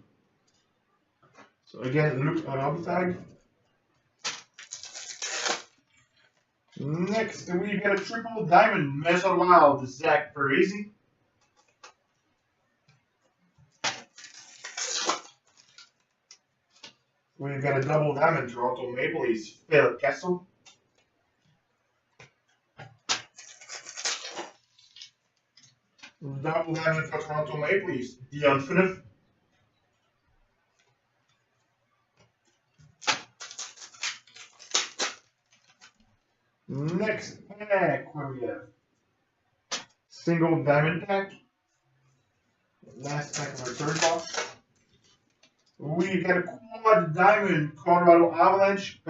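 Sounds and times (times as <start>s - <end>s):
wrapper crinkling: 4.2s - 6.4s, 13.8s - 17.0s, 23.1s - 25.8s, 32.9s - 36.2s, 42.9s - 45.8s
wrapper ripping: 4.2s - 6.4s, 13.8s - 16.9s, 23.1s - 25.7s, 32.9s - 36.0s, 42.9s - 45.8s.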